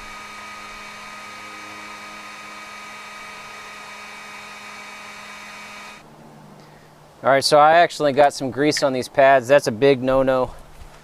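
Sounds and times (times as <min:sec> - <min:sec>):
heat gun blowing hiss: 0:00.0 - 0:06.0.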